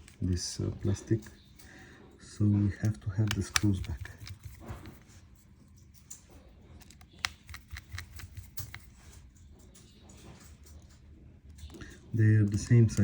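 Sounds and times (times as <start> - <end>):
small screw clicks and taps: 2.8 - 5.0, 6.8 - 9.0.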